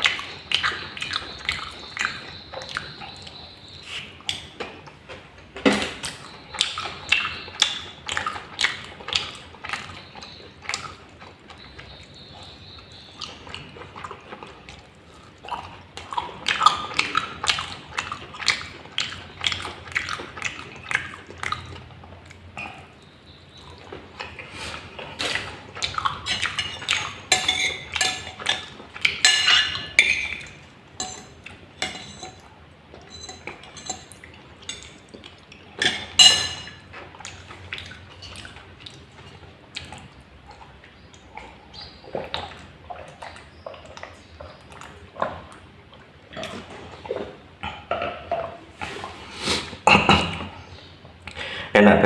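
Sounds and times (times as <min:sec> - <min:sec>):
wet chewing and mouth clicks: 0:00.0 - 0:51.4
utensil clinking on plate: 0:25.2 - 0:35.0, 0:35.8 - 0:36.8.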